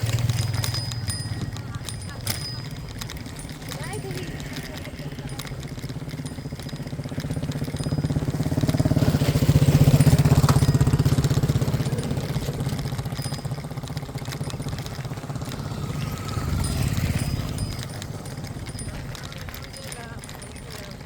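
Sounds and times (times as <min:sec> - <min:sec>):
vehicle engine passing: 0:03.3 - 0:13.0, 0:14.3 - 0:18.8.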